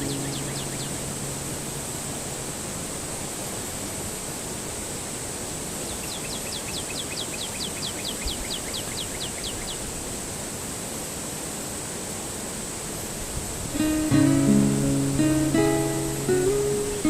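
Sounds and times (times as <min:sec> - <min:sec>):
river water rushing: 0:00.0 - 0:05.9.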